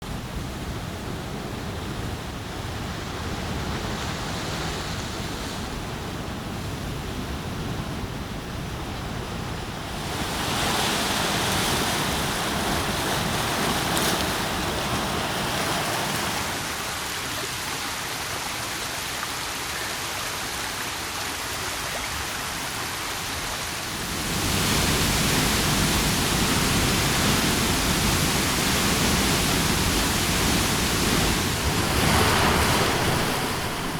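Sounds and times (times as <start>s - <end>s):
rushing water and wind: 0.0s - 33.9s.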